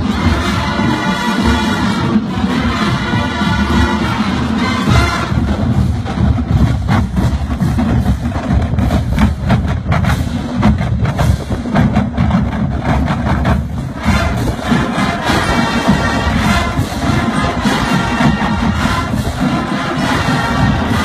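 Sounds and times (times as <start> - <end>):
wind section sustained chords: 0.0 - 8.5, 13.6 - 21.0
drums and percussion hits: 0.0 - 21.0.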